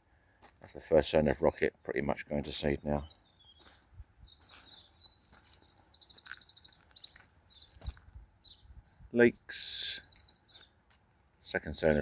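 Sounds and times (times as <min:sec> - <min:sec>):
songbird trilling: 0:03.0 - 0:12.0.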